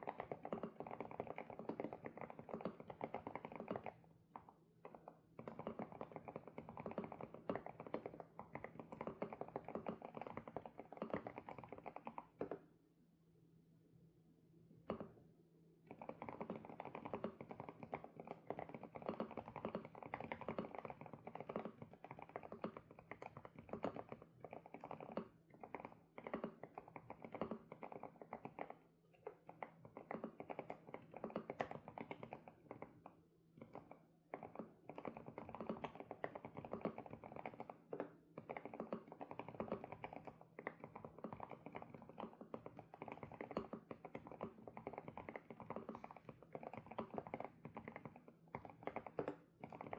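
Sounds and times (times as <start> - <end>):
mechanical keyboard typing: 38.4 - 49.9.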